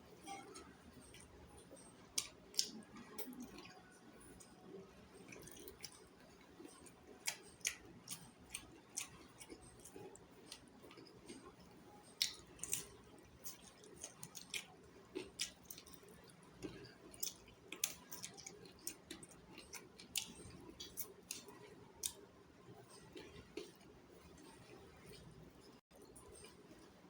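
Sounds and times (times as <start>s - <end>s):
person chewing wet mouth sounds: 2.1s - 4.0s, 5.2s - 22.3s.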